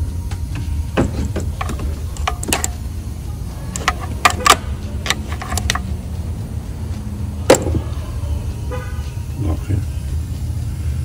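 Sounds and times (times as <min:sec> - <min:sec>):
steady low hum: 0:00.0 - 0:11.0
metallic clicks of hand tool: 0:03.8 - 0:05.9.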